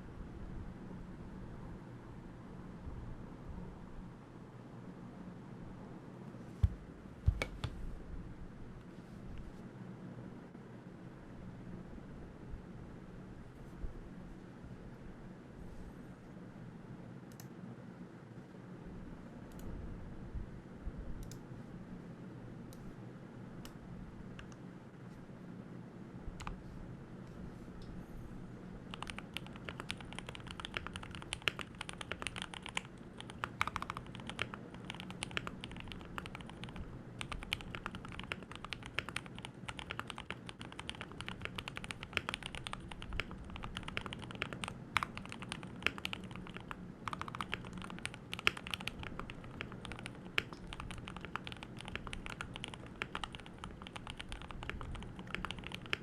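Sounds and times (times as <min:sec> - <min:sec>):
typing on mechanical keyboard: 0:28.9 - 0:56.0.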